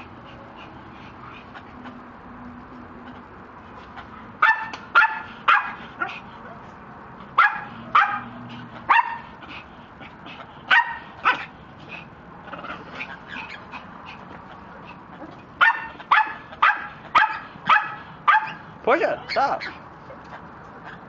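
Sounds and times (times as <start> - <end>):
dog barking: 4.4 - 6.2, 7.4 - 9.3, 10.7 - 11.5, 15.6 - 18.7.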